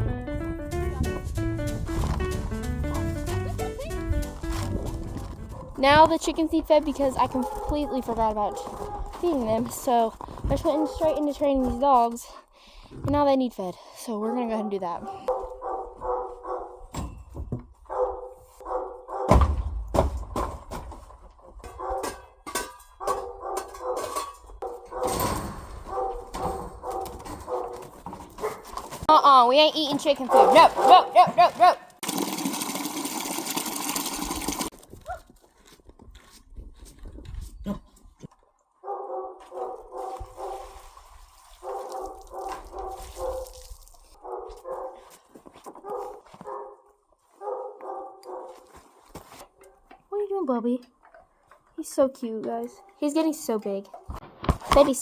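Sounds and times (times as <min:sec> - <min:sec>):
low thuds: 0:00.0 - 0:06.8
dogs barking and whining: 0:07.1 - 0:09.3, 0:14.2 - 0:16.9, 0:17.8 - 0:19.3, 0:21.7 - 0:22.3, 0:23.0 - 0:28.8, 0:30.2 - 0:32.0, 0:38.8 - 0:40.6, 0:44.2 - 0:48.7.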